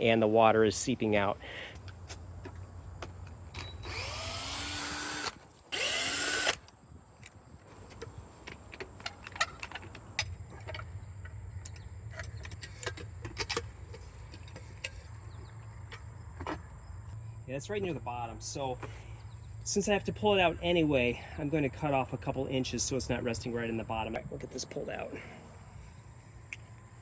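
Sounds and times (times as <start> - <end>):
power drill running: 3.8 - 6.6.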